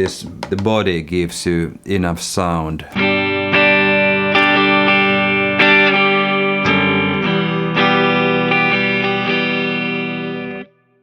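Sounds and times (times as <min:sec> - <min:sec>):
electric guitar strumming chords: 0:03.0 - 0:10.8.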